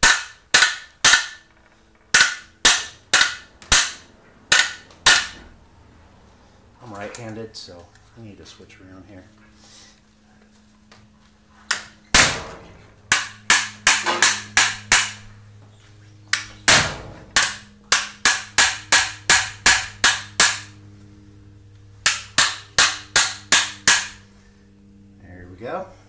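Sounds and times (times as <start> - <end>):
hammer tapping metal: 0.0 - 1.5, 2.1 - 5.5, 13.1 - 15.3, 16.3 - 20.8, 22.0 - 24.2.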